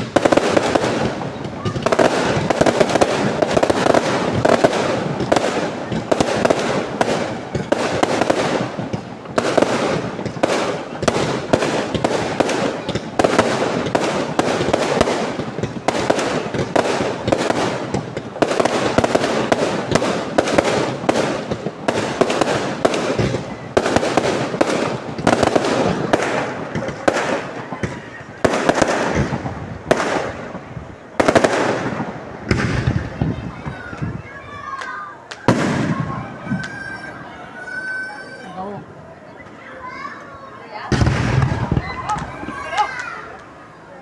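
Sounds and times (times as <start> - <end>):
loud firework reports: 0.0 - 39.3, 40.8 - 44.0
fireworks barrage crackling: 0.0 - 44.0.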